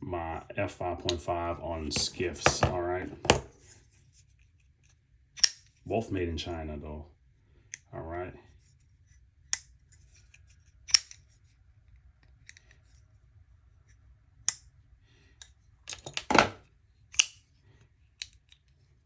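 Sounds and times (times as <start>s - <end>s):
folding knife blade clicking: 5.4s - 5.7s, 10.9s - 11.2s, 17.1s - 17.4s.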